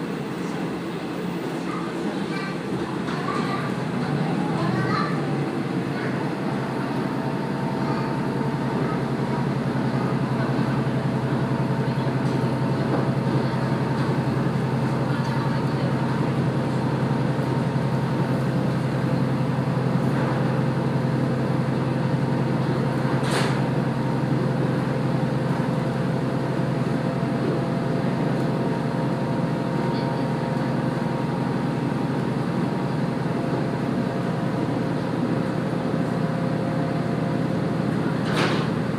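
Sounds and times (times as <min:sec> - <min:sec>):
train engine and wheels droning: 0:00.0 - 0:38.9.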